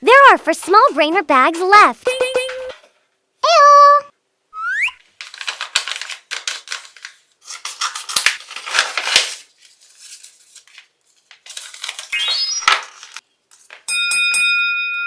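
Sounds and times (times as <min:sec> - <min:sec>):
paper crinkling and rustling: 0:05.0 - 0:13.8.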